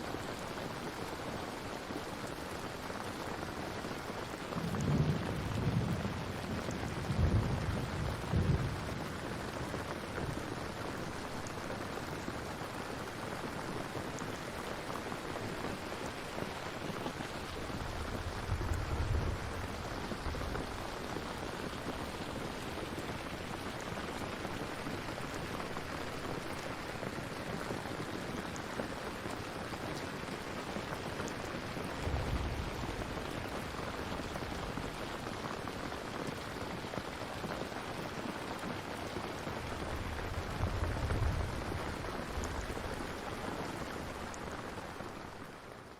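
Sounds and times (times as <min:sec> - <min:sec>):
steady rain falling: 0:00.0 - 0:45.9
low thunder rumbles: 0:04.6 - 0:10.5, 0:17.3 - 0:22.6, 0:31.7 - 0:35.8, 0:39.6 - 0:43.4.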